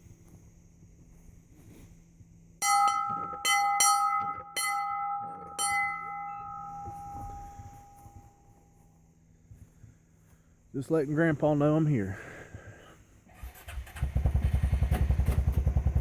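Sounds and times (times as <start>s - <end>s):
metal bell ringing: 2.6s - 8.4s.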